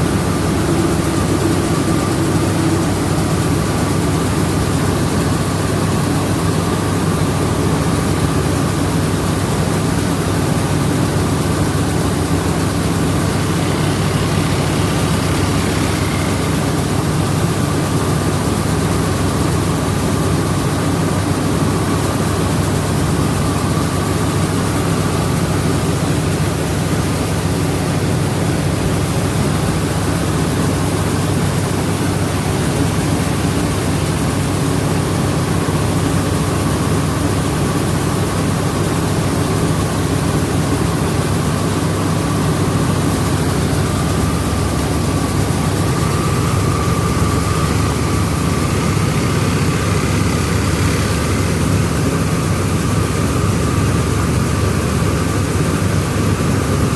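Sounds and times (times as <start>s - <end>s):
thin machine whine: 0.0s - 8.2s, 8.8s - 20.0s, 41.7s - 56.0s
milling machinery drone: 0.0s - 20.3s, 21.0s - 56.9s.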